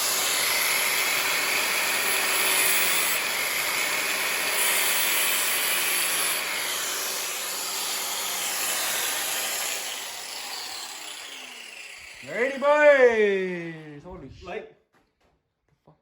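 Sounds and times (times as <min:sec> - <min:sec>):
angle grinder cutting metal: 0:00.0 - 0:12.6.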